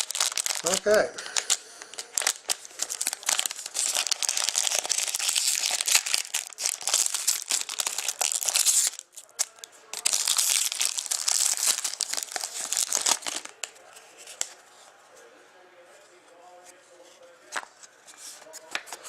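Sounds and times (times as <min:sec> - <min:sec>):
plastic wrapping crinkling: 0:00.0 - 0:14.6.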